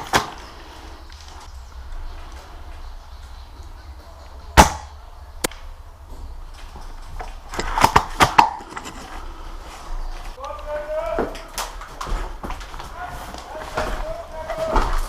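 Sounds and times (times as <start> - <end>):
airsoft gun firing: 4.6 - 5.0.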